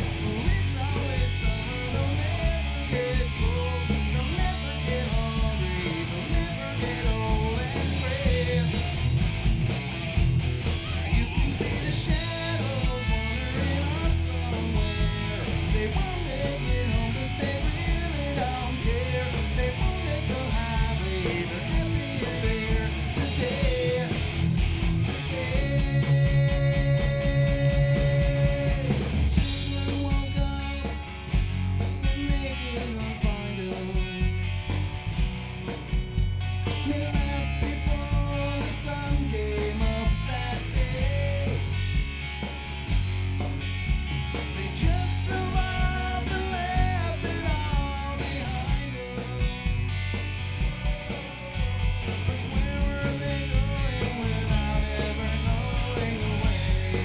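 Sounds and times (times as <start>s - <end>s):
drums: 0.0s - 57.0s
electric bass: 0.0s - 57.0s
live rock band playing: 0.0s - 57.0s
melodic electric guitar line: 0.0s - 57.0s.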